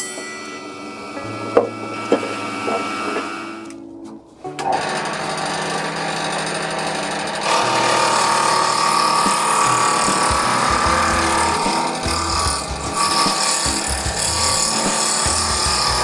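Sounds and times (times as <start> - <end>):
power tool running: 0.5 - 3.7, 4.6 - 16.0.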